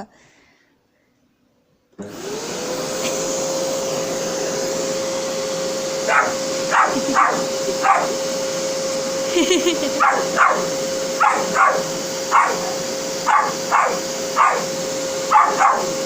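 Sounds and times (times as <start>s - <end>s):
vacuum cleaner motor whine: 1.9s - 16.0s
dog barking: 6.0s - 8.2s, 10.0s - 16.0s.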